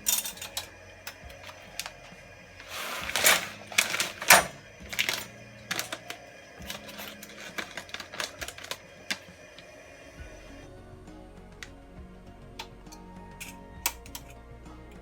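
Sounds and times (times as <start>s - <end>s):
rustling: 0.0s - 10.7s.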